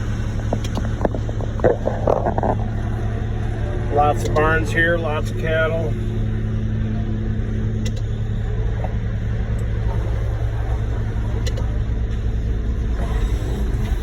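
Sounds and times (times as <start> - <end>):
diesel engine rumbling: 0.0 - 14.0.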